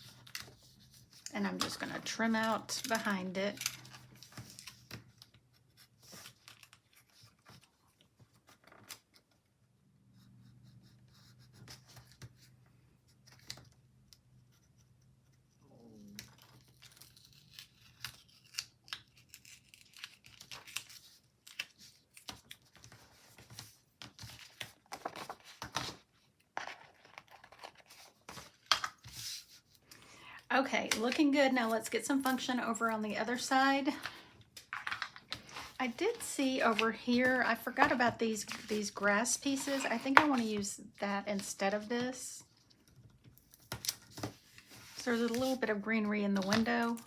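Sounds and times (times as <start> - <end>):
scissors snipping paper: 16.2 - 22.8
sticker sheets rustling: 16.2 - 29.9, 30.8 - 47.0.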